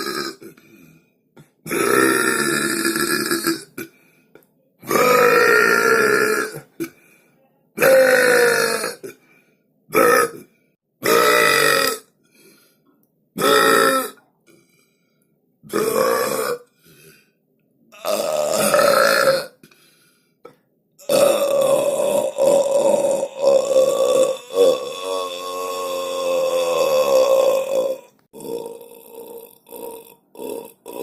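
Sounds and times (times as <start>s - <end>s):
person belching: 0.0s - 0.6s, 1.6s - 4.0s, 4.8s - 7.0s, 7.8s - 9.2s, 9.9s - 12.1s, 13.4s - 14.2s, 15.7s - 16.7s, 18.0s - 19.6s, 21.0s - 31.0s.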